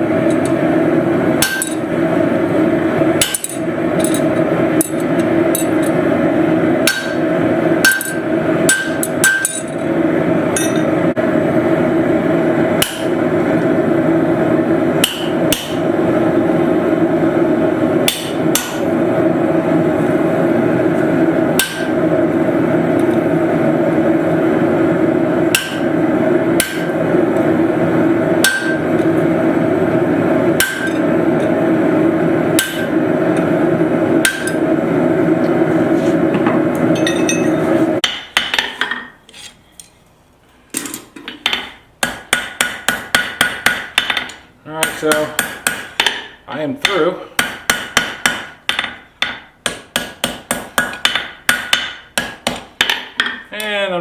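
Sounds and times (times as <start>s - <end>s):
hammer striking steel on anvil: 1.4s - 1.9s, 3.2s - 6.0s, 6.8s - 9.8s, 10.6s - 10.9s, 12.8s - 13.2s, 15.0s - 15.8s, 18.0s - 18.9s, 21.6s - 22.0s, 25.5s - 25.9s, 26.6s - 26.9s, 28.4s - 28.8s, 30.6s - 31.5s, 32.6s - 33.5s, 34.2s - 34.6s, 36.4s - 39.2s, 41.4s - 53.5s.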